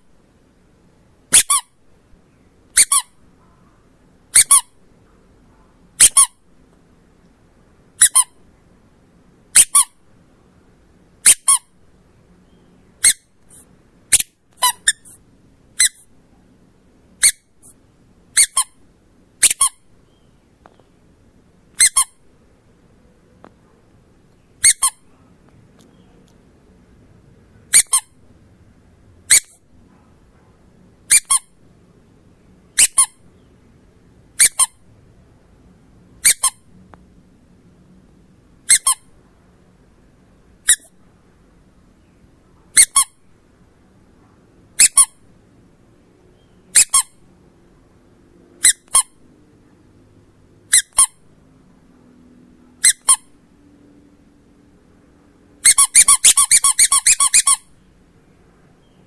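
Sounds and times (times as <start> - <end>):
squeaky dog toy squeaking: 1.3 - 1.8, 2.7 - 3.2, 4.3 - 4.8, 6.0 - 6.4, 8.0 - 8.4, 9.5 - 10.0, 11.2 - 11.8, 13.0 - 15.2, 15.8 - 16.1, 17.2 - 18.8, 19.4 - 19.9, 21.7 - 22.2, 24.6 - 25.1, 27.7 - 28.2, 29.3 - 29.6, 31.1 - 31.6, 32.8 - 33.2, 34.4 - 34.8, 36.2 - 36.7, 38.6 - 39.1, 40.6 - 41.0, 42.7 - 43.2, 44.8 - 45.2, 46.7 - 47.2, 48.6 - 49.2, 50.7 - 51.3, 52.8 - 53.4, 55.6 - 57.7.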